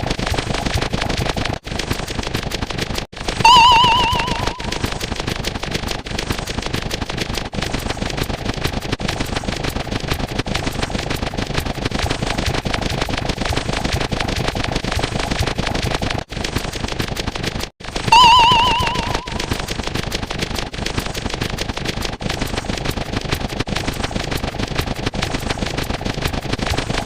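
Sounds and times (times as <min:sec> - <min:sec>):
rapid crackling pops: 0:00.0 - 0:27.0
warbling trilling tone: 0:03.4 - 0:04.8, 0:18.1 - 0:19.5.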